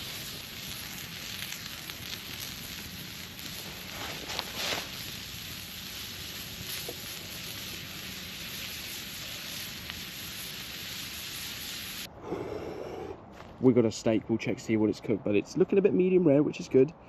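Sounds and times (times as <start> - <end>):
steak sizzling: 0.0 - 12.1
campfire crackling: 0.0 - 13.5.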